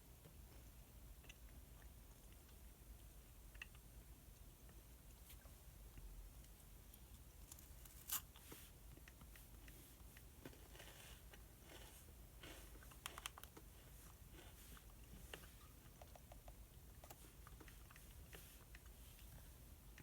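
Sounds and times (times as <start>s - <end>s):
small clicks and taps: 15.3s - 18.9s.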